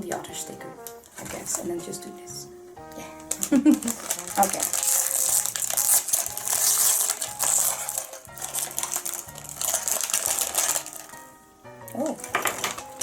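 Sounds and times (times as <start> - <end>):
background music with bass: 0.0 - 4.7
bag opening: 2.9 - 11.2, 11.9 - 13.0
plastic pieces clattering: 3.1 - 11.2, 12.2 - 13.0.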